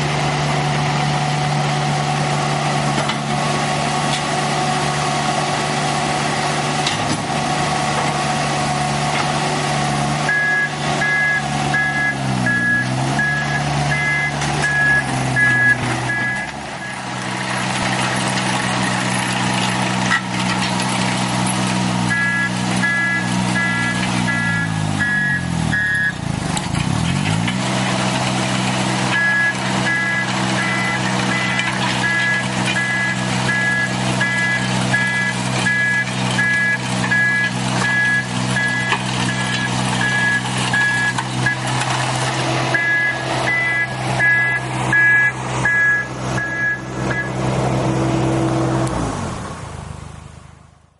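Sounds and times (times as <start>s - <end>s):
backhoe engine running: 0.0s - 50.9s
reversing alarm beeping: 10.3s - 17.0s, 22.1s - 26.2s, 29.1s - 41.6s, 42.7s - 47.4s.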